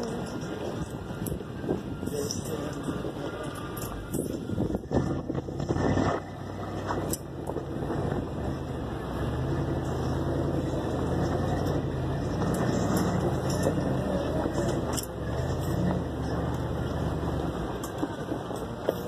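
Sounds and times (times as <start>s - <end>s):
off-road vehicle engine running: 0.0s - 19.0s.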